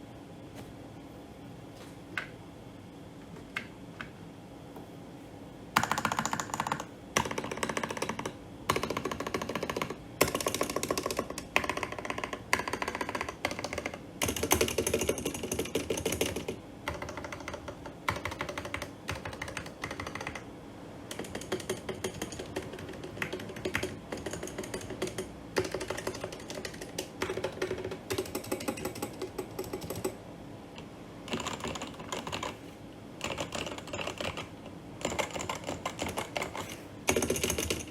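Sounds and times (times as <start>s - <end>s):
mechanical keyboard typing: 5.8s - 20.5s, 21.1s - 30.2s, 31.2s - 32.6s, 33.2s - 37.9s.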